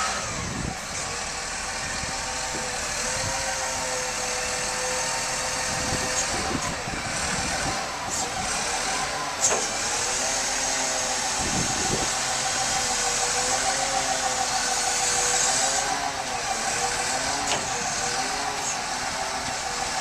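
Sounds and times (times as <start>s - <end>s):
grader engine whine: 0.0s - 20.0s.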